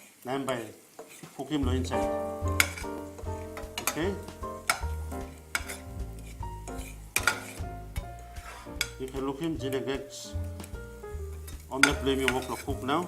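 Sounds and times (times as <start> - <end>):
omelette sizzling in a pan: 0.0 - 13.0
spatula knocking against pan: 2.5 - 5.9, 6.7 - 9.0.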